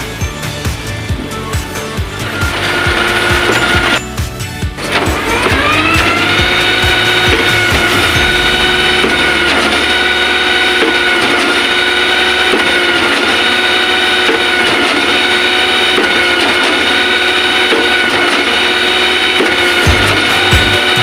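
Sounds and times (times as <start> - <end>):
concrete pump whining: 0.0 - 21.0
low rumble: 4.8 - 13.4.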